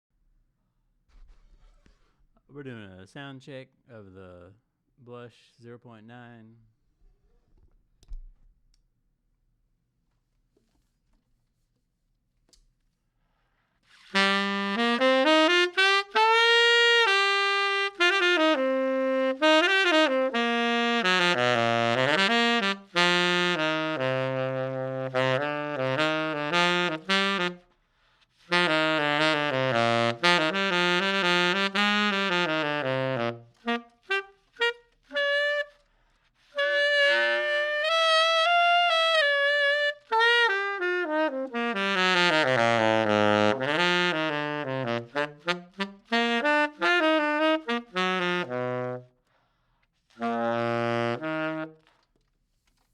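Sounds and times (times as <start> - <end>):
saxophone playing jazz phrases: 13.9 - 27.8, 28.4 - 49.2, 50.1 - 52.0.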